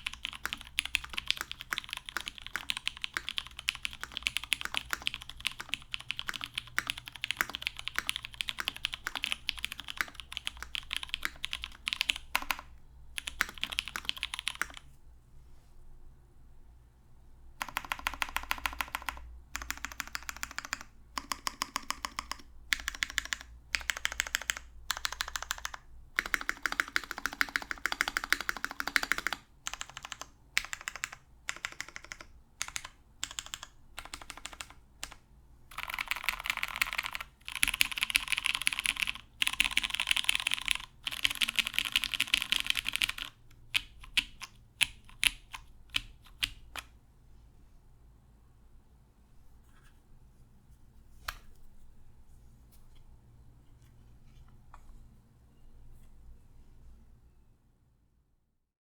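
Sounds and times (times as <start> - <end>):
mechanical keyboard typing: 0.0 - 14.8, 17.6 - 46.9.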